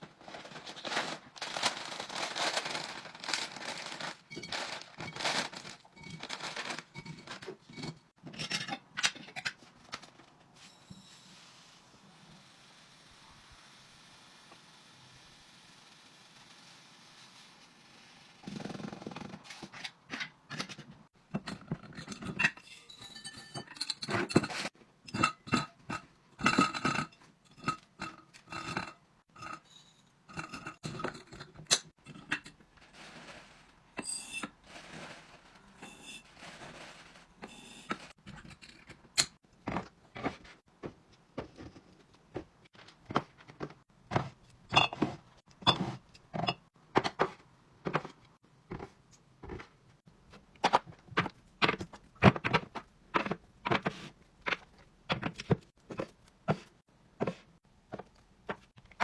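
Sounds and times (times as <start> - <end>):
containers clinking and scraping: 0.0 - 11.7, 18.5 - 40.7, 41.5 - 49.8.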